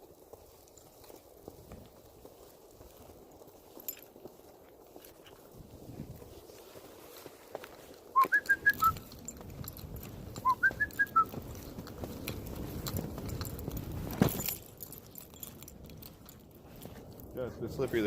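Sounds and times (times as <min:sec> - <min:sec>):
person whistling: 0:08.2 - 0:09.0, 0:10.4 - 0:11.3.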